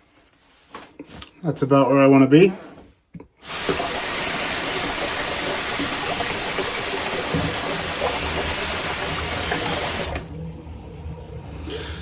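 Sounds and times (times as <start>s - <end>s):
water running from sink tap: 3.4s - 10.4s.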